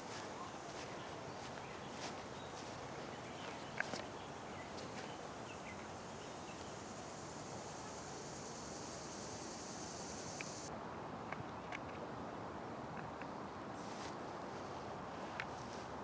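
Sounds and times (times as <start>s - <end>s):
footsteps on garden path: 0.0s - 5.2s
faint outdoor hiss: 0.0s - 16.0s.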